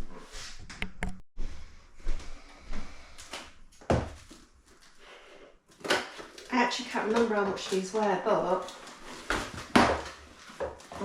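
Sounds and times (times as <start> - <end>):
packaging rustling: 7.5 - 11.0.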